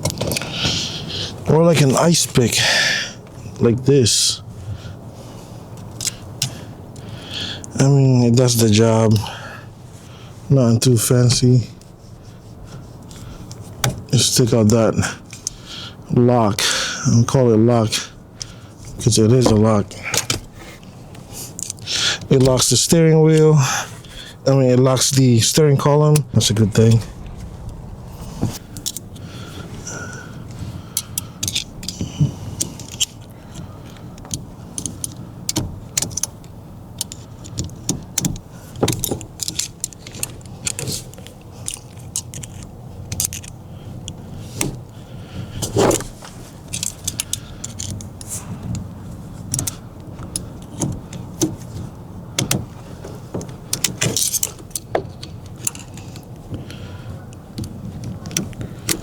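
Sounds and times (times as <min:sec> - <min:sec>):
small metal clicks and scrapes: 0:18.4 - 0:23.4, 0:28.8 - 0:59.0.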